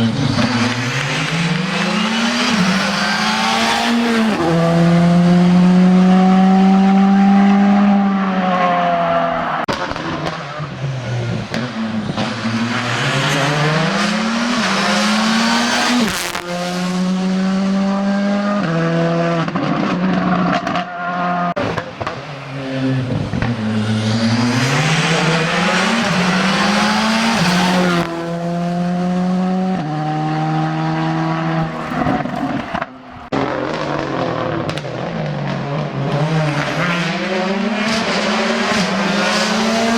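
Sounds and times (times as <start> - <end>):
rally car engine revving: 0.0 - 39.9
tyre squeal: 14.5 - 16.3.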